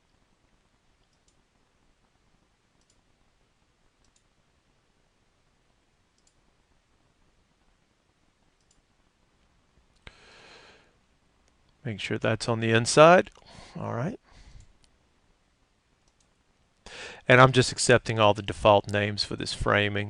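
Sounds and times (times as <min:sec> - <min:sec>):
computer mouse clicks: 0:01.0 - 0:01.4, 0:02.8 - 0:03.0, 0:04.0 - 0:04.3, 0:06.2 - 0:06.4, 0:08.6 - 0:08.8, 0:16.0 - 0:16.3.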